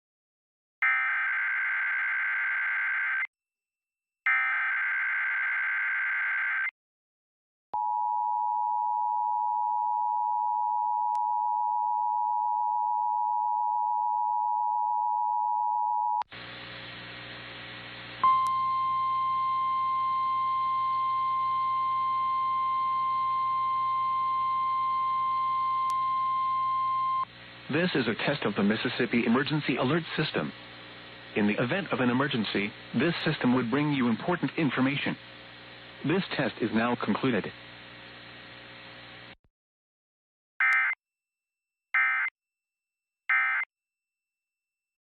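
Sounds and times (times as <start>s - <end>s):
low hum and hiss: 16.4s - 21.8s, 25.9s - 39.3s
single steady tone: 18.2s - 27.3s.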